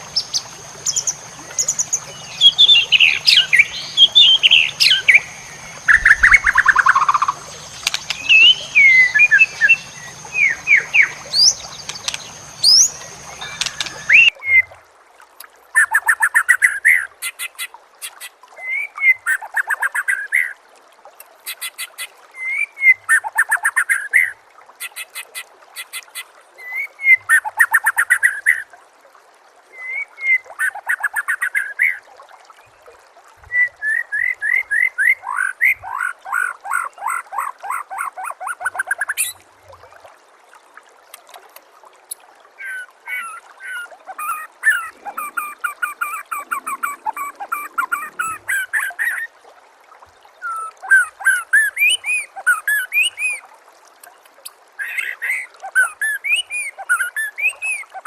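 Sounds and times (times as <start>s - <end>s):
songbird singing: 0.0s - 14.7s, 42.6s - 49.2s.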